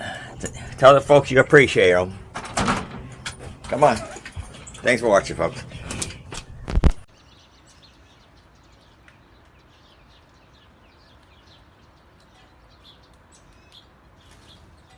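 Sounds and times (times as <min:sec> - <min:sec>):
faint bird chirping: 0:06.5 - 0:14.9.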